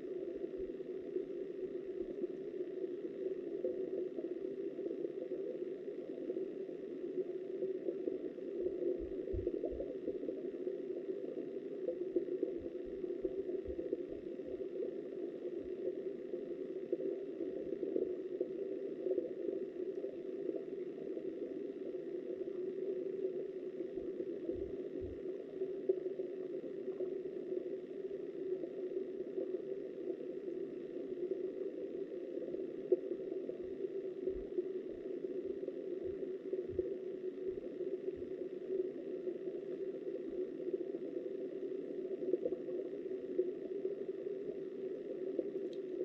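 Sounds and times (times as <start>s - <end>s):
muffled underwater stream rush: 0.0s - 46.0s.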